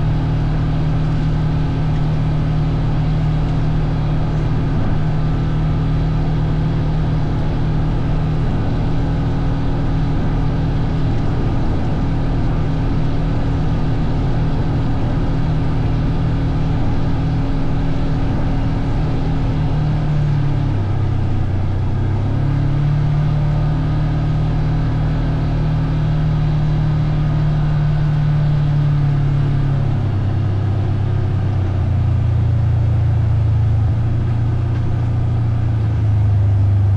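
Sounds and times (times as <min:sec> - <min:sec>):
vehicle engine running: 0:00.0 - 0:36.9.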